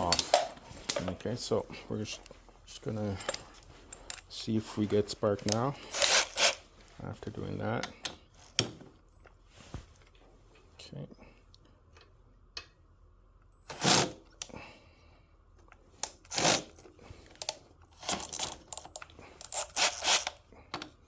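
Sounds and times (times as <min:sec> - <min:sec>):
tools scraping and clattering: 0:00.0 - 0:01.4, 0:02.1 - 0:06.7.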